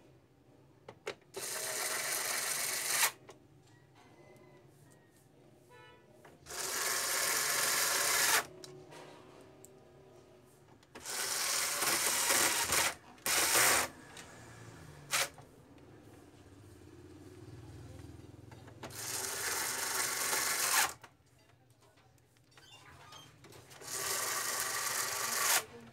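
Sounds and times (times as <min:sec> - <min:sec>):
small machine running: 0:01.4 - 0:03.2, 0:06.5 - 0:08.5, 0:11.0 - 0:15.4, 0:18.9 - 0:21.0, 0:23.8 - 0:25.7.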